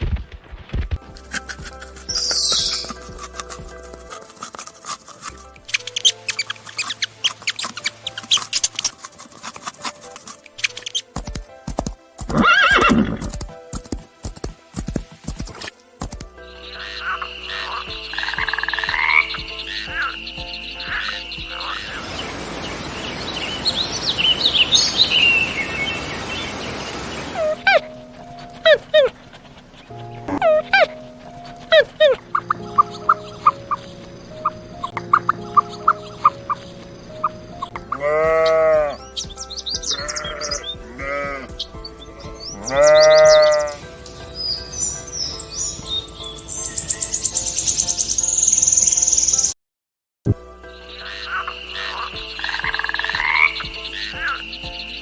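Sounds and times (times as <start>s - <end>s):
hissing chorus with high chirps: 1.7s - 3.9s, 16.4s - 38.0s, 41.6s - 49.5s
sheep bleating: 37.8s - 39.0s, 39.9s - 43.8s.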